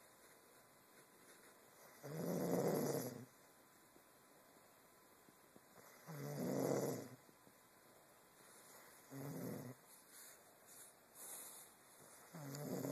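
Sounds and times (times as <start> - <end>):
person snoring: 12.3 - 12.9.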